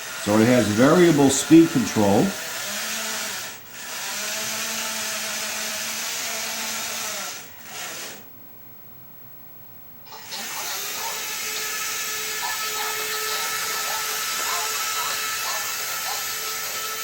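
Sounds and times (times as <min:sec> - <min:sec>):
toy electric motor whining: 0:00.0 - 0:08.3, 0:10.1 - 0:17.0.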